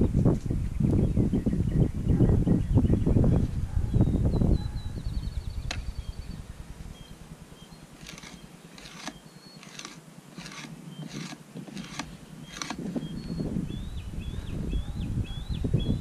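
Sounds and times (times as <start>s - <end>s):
birds chirping: 0.0s - 16.0s
knife scraping hide: 8.0s - 12.9s.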